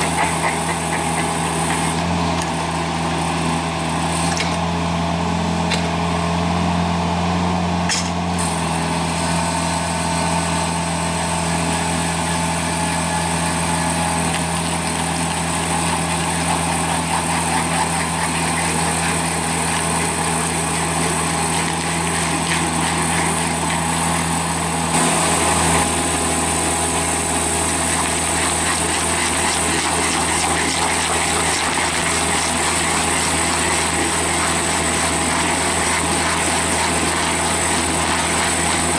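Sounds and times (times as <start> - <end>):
stump grinder engine running: 0.0 - 38.9.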